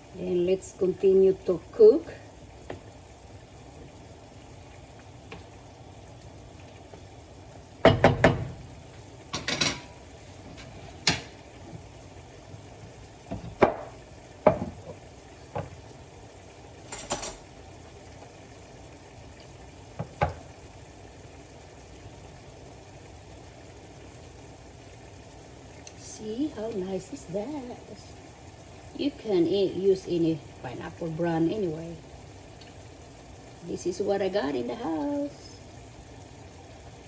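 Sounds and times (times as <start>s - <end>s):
faint sizzle: 0.0s - 37.0s
utensil knocking against pan: 7.8s - 8.5s, 13.5s - 14.8s.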